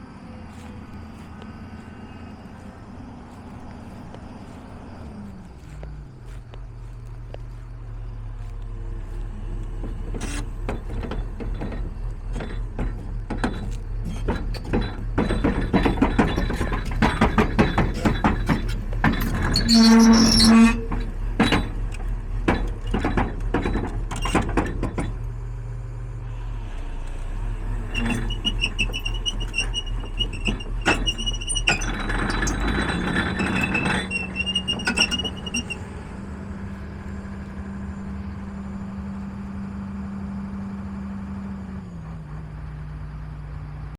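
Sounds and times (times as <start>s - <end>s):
excavator diesel engine running: 0.0s - 43.9s
high squeals: 6.7s - 21.9s, 27.8s - 39.0s
metallic clanks and knocks: 9.5s - 25.4s, 28.0s - 37.4s.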